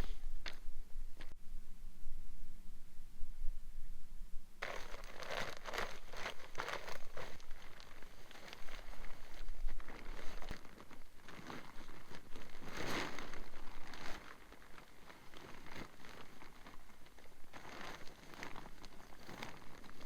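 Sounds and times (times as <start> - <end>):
tent fabric crinkling and rustling: 4.6 - 20.0.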